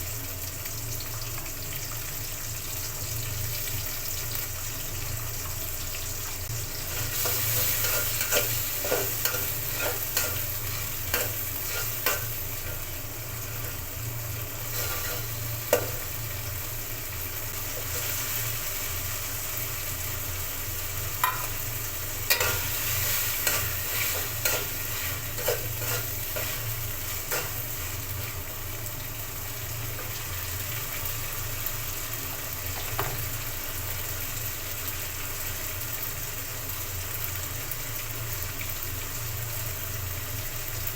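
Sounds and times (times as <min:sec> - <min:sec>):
food sizzling in pan: 0:00.0 - 0:40.9
spatula scraping pan: 0:06.9 - 0:12.9, 0:14.6 - 0:16.1, 0:22.3 - 0:28.4.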